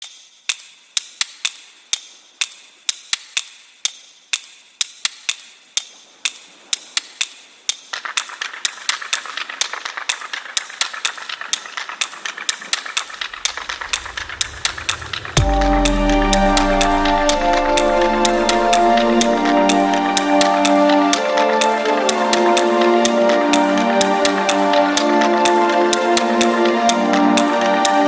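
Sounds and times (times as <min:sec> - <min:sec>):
sharp irregular clicks: 0:00.0 - 0:28.0
hiss: 0:01.4 - 0:15.4.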